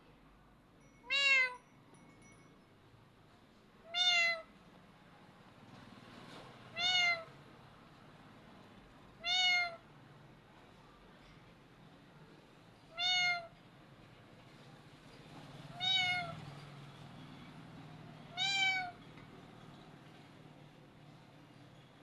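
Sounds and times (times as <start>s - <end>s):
parrot mimicking cat meows: 1.1s - 1.6s, 3.8s - 4.5s, 6.7s - 7.3s, 9.2s - 9.8s, 12.9s - 13.6s, 15.7s - 16.4s, 18.3s - 19.0s.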